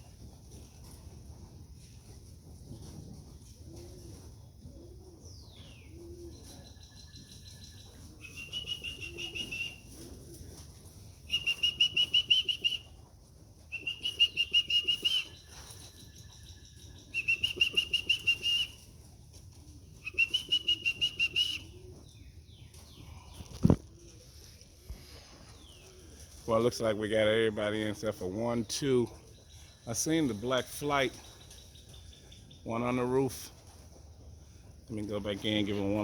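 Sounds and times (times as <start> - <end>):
pigeons cooing: 1.8 - 26.8
trilling whistle blasts: 11.3 - 12.8, 13.8 - 15.4, 17.2 - 18.8, 20.0 - 21.7.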